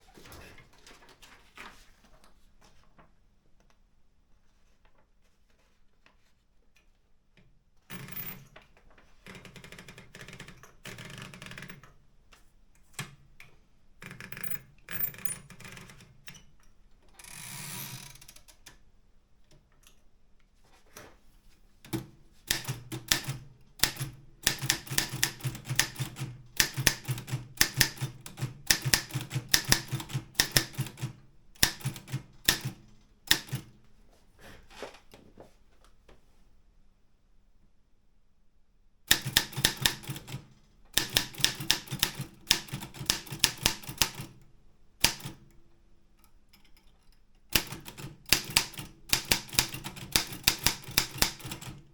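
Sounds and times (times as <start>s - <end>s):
typewriter key strikes: 22.5s - 33.7s, 39.1s - 44.4s, 47.5s - 51.8s.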